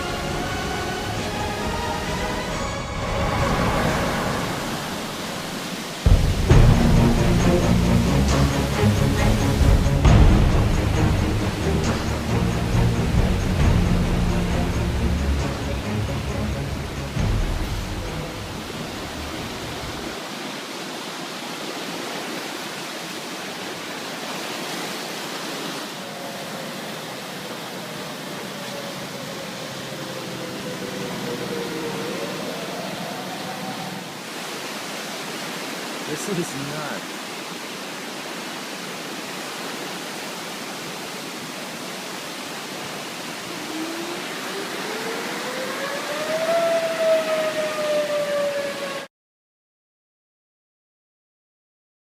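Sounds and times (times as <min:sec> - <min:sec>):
outdoor warning siren: 0:00.0 - 0:20.2, 0:26.0 - 0:34.4, 0:42.8 - 0:49.1
floodwater rushing: 0:00.0 - 0:49.1.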